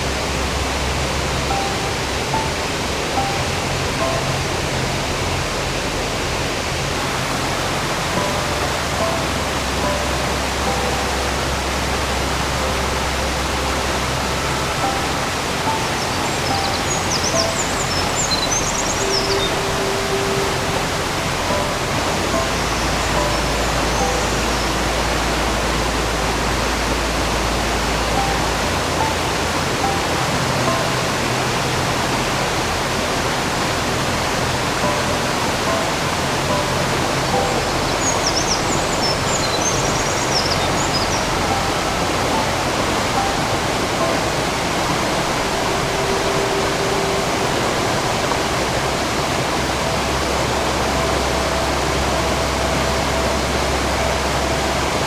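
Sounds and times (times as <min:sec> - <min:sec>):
mountain stream rushing: 0:00.0 - 0:55.0
bird chirping: 0:15.6 - 0:20.4, 0:37.3 - 0:42.0.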